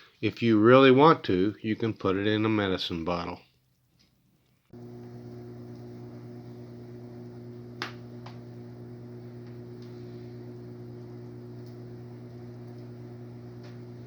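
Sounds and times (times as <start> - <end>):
low electrical hum: 4.7 - 14.0
wood fire crackling and popping: 4.7 - 14.0.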